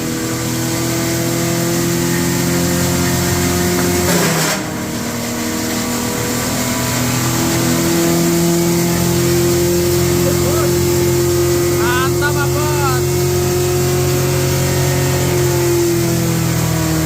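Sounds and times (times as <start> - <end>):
wood crusher humming: 5.0 - 17.0.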